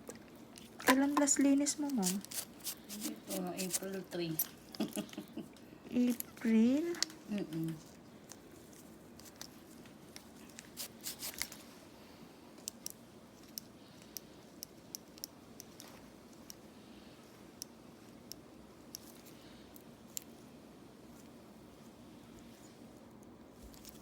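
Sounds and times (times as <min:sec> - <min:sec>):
metal tool snipping skin: 0:01.9 - 0:04.0.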